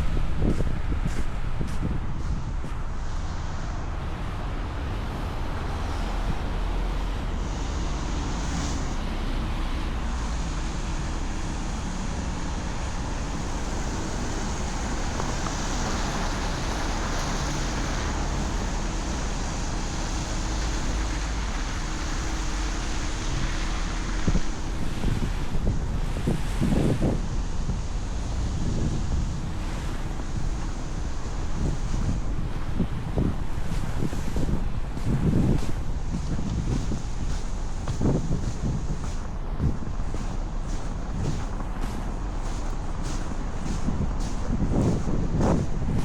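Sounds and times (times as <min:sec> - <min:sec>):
traffic road noise: 0:00.0 - 0:46.0.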